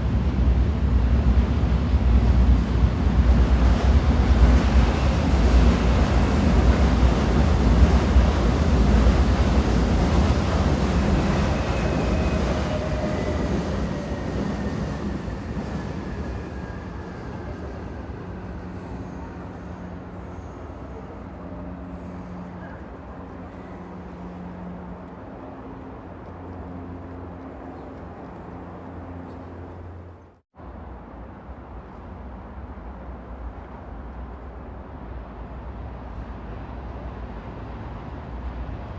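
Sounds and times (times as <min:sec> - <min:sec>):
train rumbling: 0:00.0 - 0:38.9.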